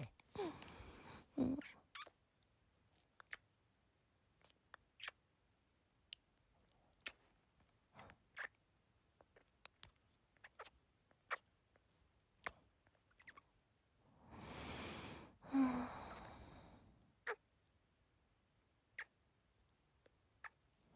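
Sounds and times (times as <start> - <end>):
person breathing in: 0.0 - 1.5, 14.2 - 17.0
soft kissing lip smacks: 3.0 - 3.5, 4.4 - 5.2, 6.9 - 7.2
sighing breath with hum: 14.2 - 17.0.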